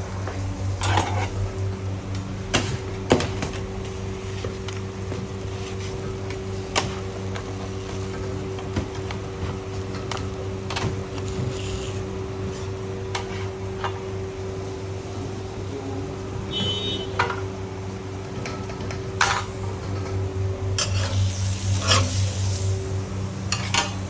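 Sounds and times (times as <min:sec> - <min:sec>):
electrical hum of kitchen equipment: 0:00.0 - 0:24.0
utensils and dishes clinking: 0:00.8 - 0:01.4, 0:20.8 - 0:22.2, 0:23.5 - 0:24.0.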